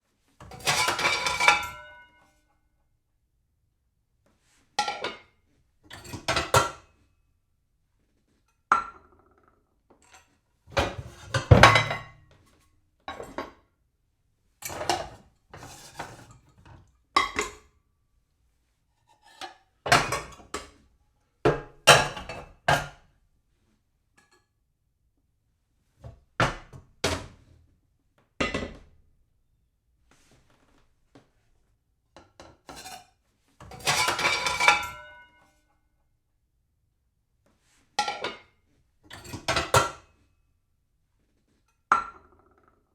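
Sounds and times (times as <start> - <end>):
crockery clattering: 33.8 - 35.2.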